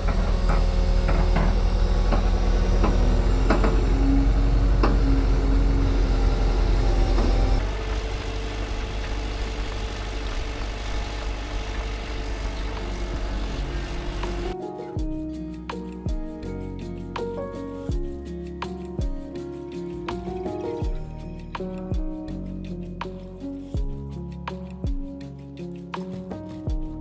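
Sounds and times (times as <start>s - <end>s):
knocks and clanks: 0.0s - 7.7s
heavy machine engine running: 0.0s - 14.6s.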